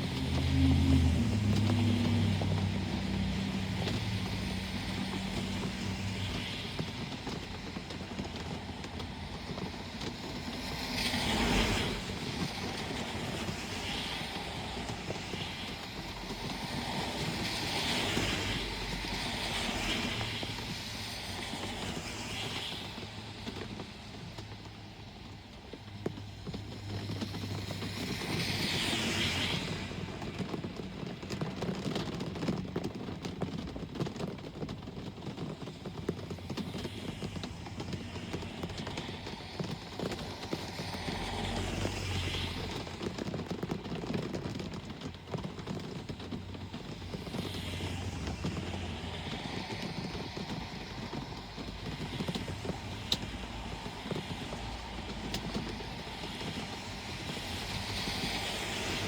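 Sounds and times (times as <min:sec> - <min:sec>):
steady rain: 0:00.0 - 0:59.0
vehicles passing on wet road: 0:00.0 - 0:59.0.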